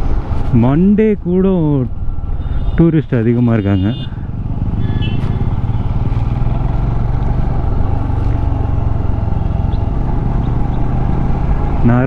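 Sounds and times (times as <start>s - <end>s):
motorcycle engine running: 3.8s - 12.0s.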